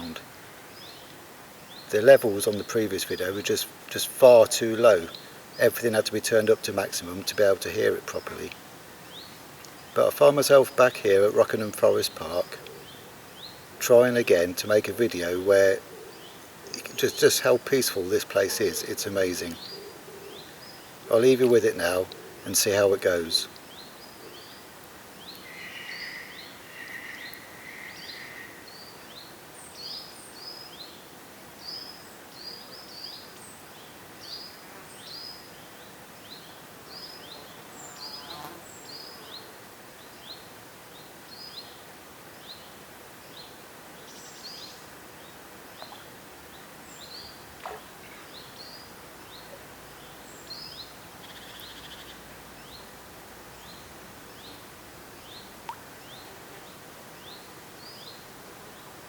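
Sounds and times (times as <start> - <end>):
birds chirping: 0.0 - 31.0, 43.3 - 53.0
faint steady hiss: 0.0 - 59.0.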